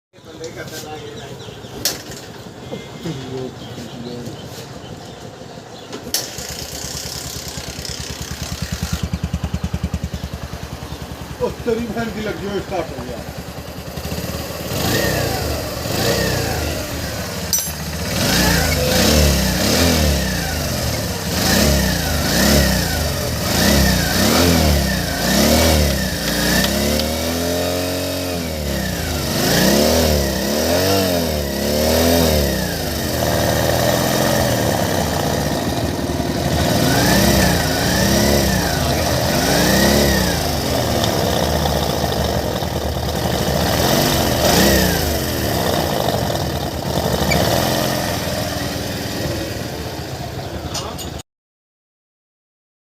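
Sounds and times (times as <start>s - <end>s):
motorcycle idling: 0.2s - 51.2s
motorcycle engine revving: 0.4s - 51.2s.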